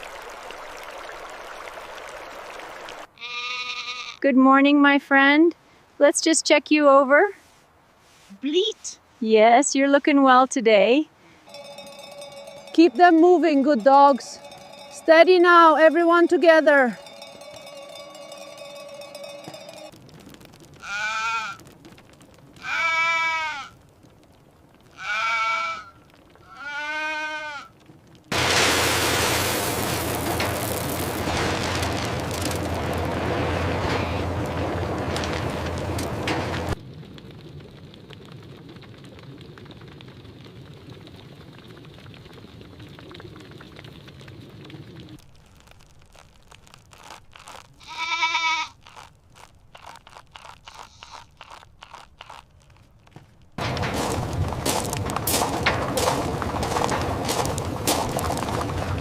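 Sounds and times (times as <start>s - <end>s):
goats bleating: 3.2s - 4.2s, 20.8s - 21.7s, 22.6s - 23.8s, 24.9s - 27.8s, 47.8s - 48.8s
crunching clicks: 17.0s - 23.0s, 44.7s - 59.0s.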